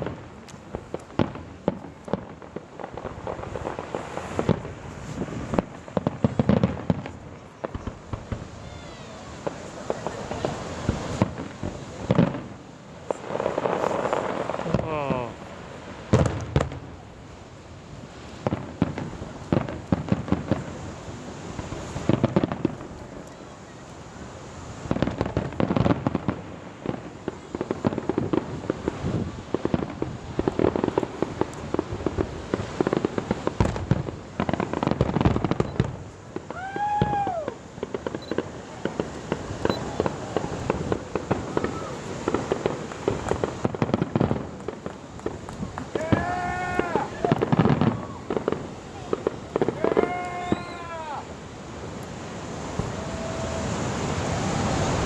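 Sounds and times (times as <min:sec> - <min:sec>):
distant fireworks: 0:00.0 - 0:55.0
firework shells bursting: 0:24.7 - 0:53.6.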